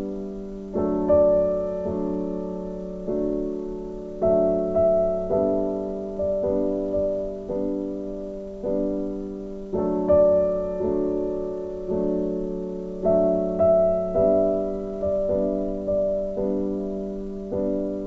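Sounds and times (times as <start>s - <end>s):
soft piano music: 0.0s - 18.0s.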